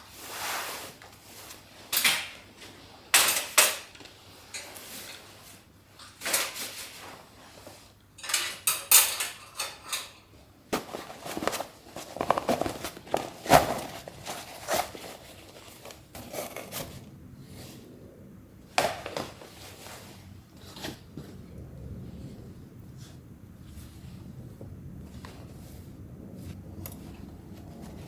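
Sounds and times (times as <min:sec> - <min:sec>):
camping gear clicks and knocks: 0:08.2 - 0:16.9.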